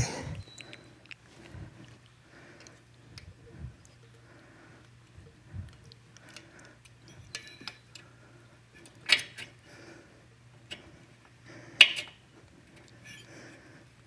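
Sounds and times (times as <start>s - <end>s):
low steady hum: 0.0s - 14.0s
metal parts and tools clicking: 5.8s - 8.0s.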